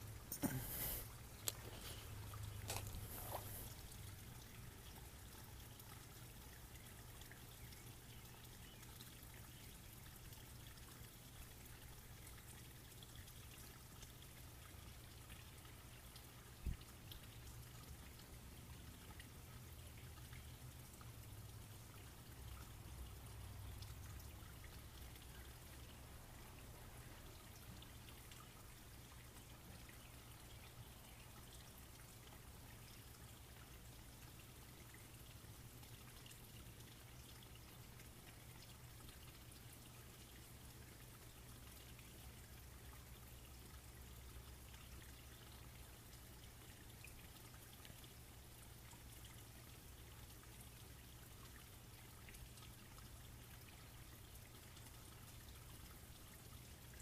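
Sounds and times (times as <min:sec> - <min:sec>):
faint steady hiss: 0:00.0 - 0:57.0.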